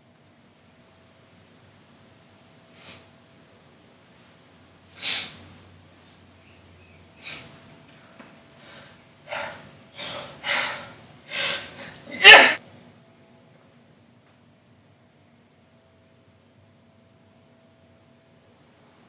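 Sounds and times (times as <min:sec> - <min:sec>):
person's sharp intakes of breath: 0:02.7 - 0:03.1, 0:05.0 - 0:05.5, 0:07.2 - 0:12.6.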